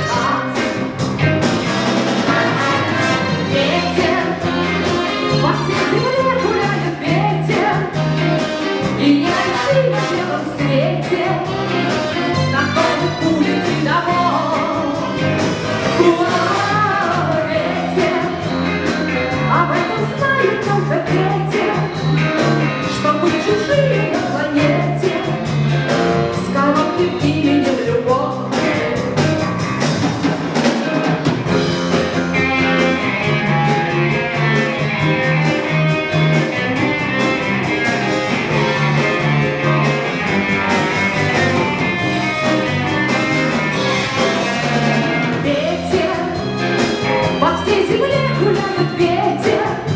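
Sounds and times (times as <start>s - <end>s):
woman singing: 0.0s - 0.9s, 3.5s - 29.4s, 45.3s - 49.9s
big band playing: 0.0s - 49.9s.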